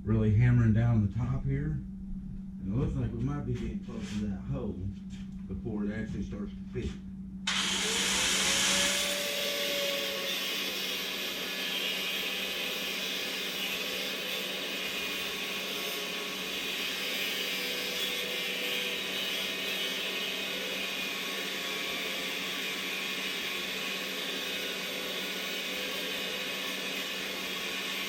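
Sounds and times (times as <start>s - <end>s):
motor whirring: 7.5s - 11.1s.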